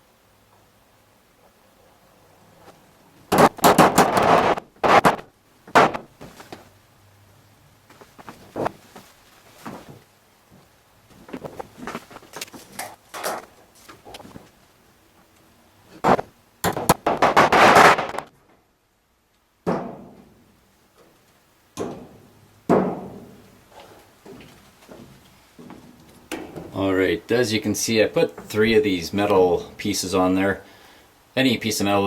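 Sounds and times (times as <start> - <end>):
handling knocks and clicks: 21.0 - 26.8.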